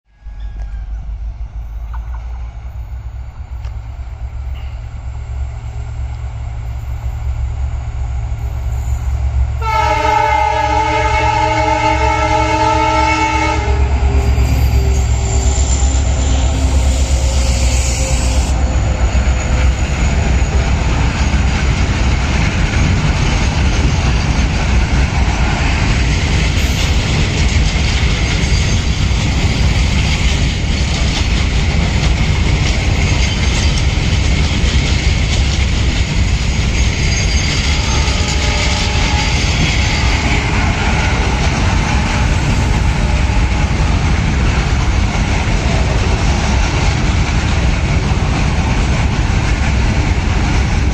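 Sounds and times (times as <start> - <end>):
freight wagons rumbling on rails: 0.1 - 50.9
wheels clacking over rail joints: 19.4 - 50.9.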